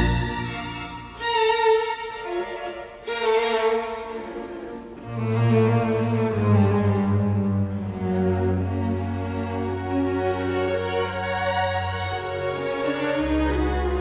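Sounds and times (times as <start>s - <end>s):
low cello or bass line: 0.0s - 1.2s, 5.0s - 14.0s
bowed strings music: 0.0s - 14.0s.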